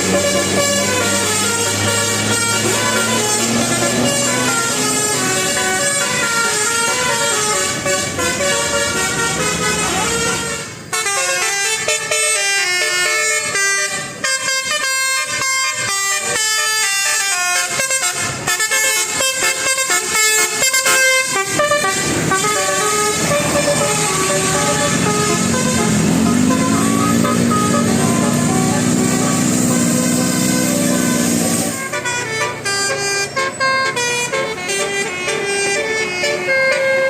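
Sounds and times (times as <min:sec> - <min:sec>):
multi-tone musical bus horn: 0:00.0 - 0:37.0.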